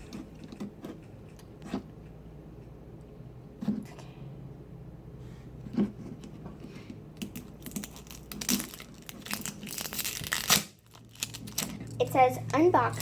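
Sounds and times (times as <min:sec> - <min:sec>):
plastic packaging crinkling and tearing: 0:07.3 - 0:12.2.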